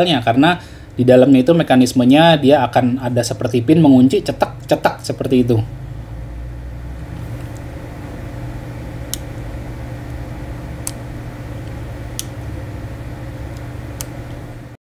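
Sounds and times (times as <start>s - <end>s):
low electrical hum: 0.0s - 14.8s
sharp clicks: 11.6s - 12.4s.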